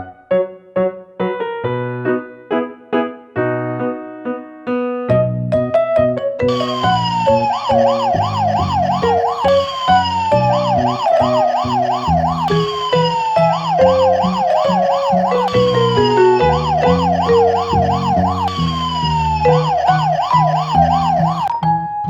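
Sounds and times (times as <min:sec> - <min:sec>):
bouncy music with bass line: 0:06.5 - 0:21.5
warbling siren: 0:06.5 - 0:21.5.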